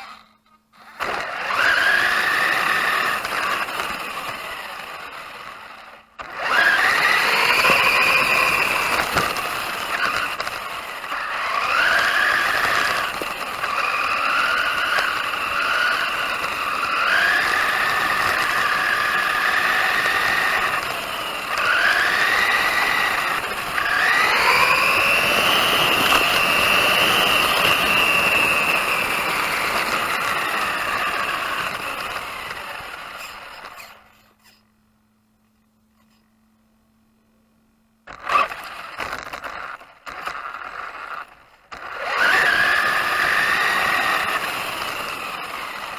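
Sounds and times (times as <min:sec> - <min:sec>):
rc car electric motor whining: 0:00.0 - 0:34.7, 0:35.9 - 0:36.3, 0:38.1 - 0:45.9.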